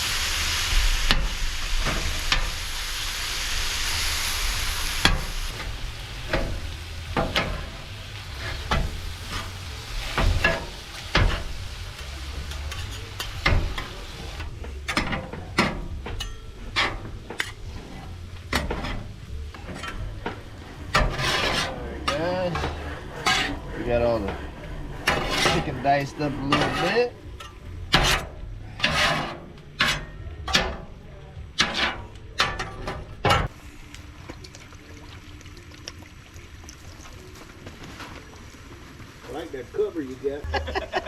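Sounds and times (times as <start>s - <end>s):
chicken sizzling on a griddle: 0.0s - 14.7s, 15.3s - 27.1s
metal spatulas scraping steel: 12.4s - 13.9s, 20.9s - 30.9s, 31.6s - 32.8s.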